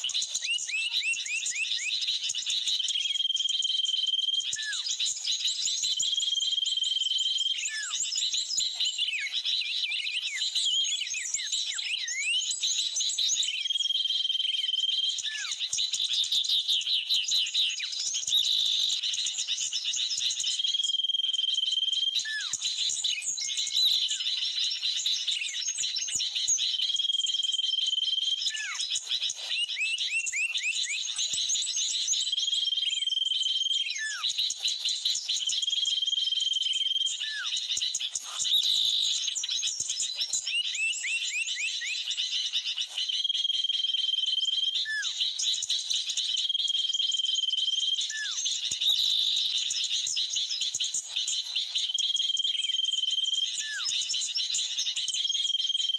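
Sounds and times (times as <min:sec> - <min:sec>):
bird whistle held: 0:52.3 - 0:53.9.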